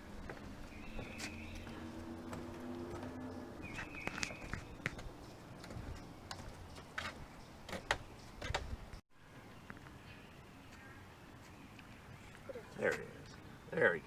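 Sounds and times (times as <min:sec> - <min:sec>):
footsteps on a trail: 0:00.0 - 0:09.0.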